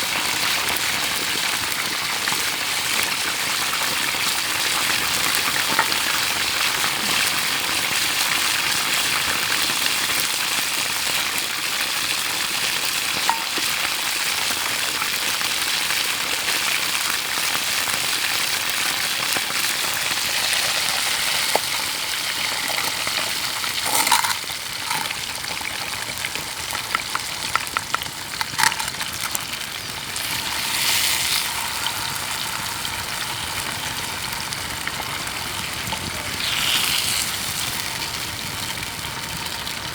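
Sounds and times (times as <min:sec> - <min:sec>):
food sizzling in frying pan: 0:00.0 - 0:39.9
utensil clinking against pan: 0:13.3 - 0:13.6, 0:23.9 - 0:25.2, 0:27.0 - 0:29.4.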